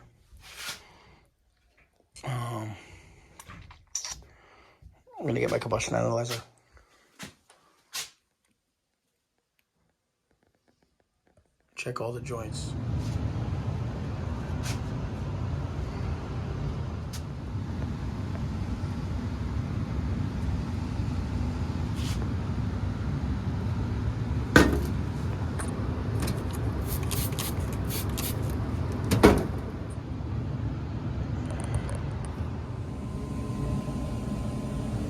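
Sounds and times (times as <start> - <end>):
furnace low rumble: 11.8 - 35.0.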